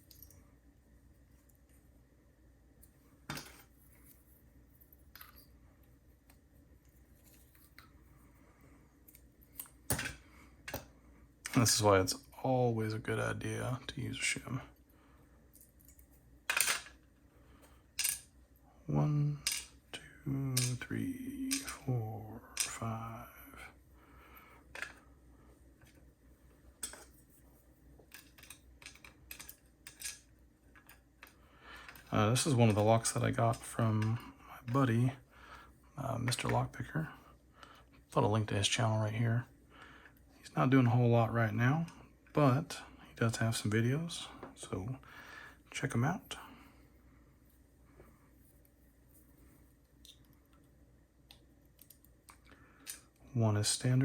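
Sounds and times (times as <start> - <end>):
small metal lock parts clicking: 28.1 - 31.3.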